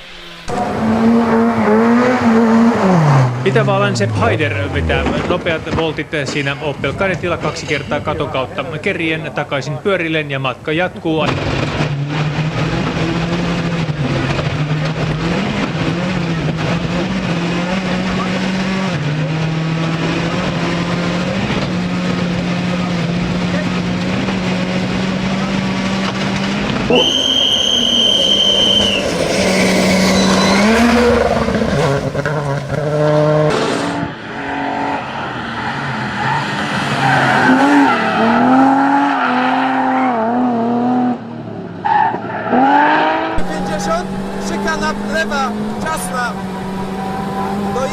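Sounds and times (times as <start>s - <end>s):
rally car engine at high revs: 0.0s - 5.8s, 11.3s - 47.9s
high squeal: 26.9s - 31.4s.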